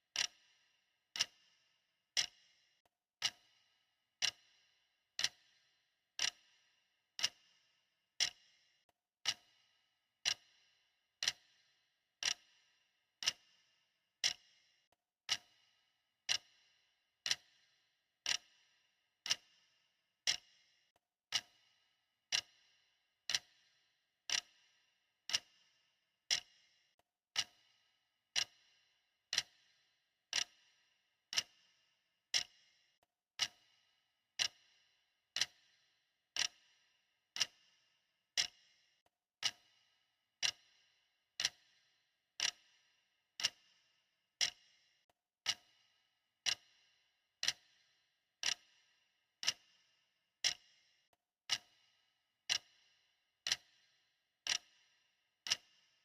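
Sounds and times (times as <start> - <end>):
clock ticking: 0.2 - 0.4, 1.2 - 1.4, 2.2 - 2.4, 3.2 - 3.6, 4.2 - 4.5, 5.2 - 5.5, 6.2 - 6.4, 7.2 - 7.4, 8.2 - 8.4, 9.2 - 9.5, 10.2 - 10.5, 11.2 - 11.5, 12.2 - 12.5, 13.2 - 13.4, 14.2 - 14.4, 15.3 - 15.6, 16.2 - 16.5, 17.2 - 17.5, 18.2 - 18.5, 19.2 - 19.5, 20.3 - 20.5, 21.3 - 21.6, 22.3 - 22.6, 23.3 - 23.6, 24.3 - 24.6, 25.3 - 25.5, 26.3 - 26.5, 27.3 - 27.7, 28.3 - 28.6, 29.3 - 29.6, 30.3 - 30.6, 31.3 - 31.6, 32.3 - 32.6, 33.4 - 33.7, 34.4 - 34.7, 35.4 - 35.7, 36.4 - 36.7, 37.4 - 37.6, 38.4 - 38.6, 39.4 - 39.7, 40.4 - 40.7, 41.4 - 41.7, 42.4 - 42.6, 43.4 - 43.7, 44.4 - 44.6, 45.4 - 45.8, 46.4 - 46.7, 47.4 - 47.7, 48.4 - 48.7, 49.4 - 49.6, 50.4 - 50.7, 51.5 - 51.8, 52.5 - 52.7, 53.5 - 53.7, 54.5 - 54.7, 55.4 - 55.7.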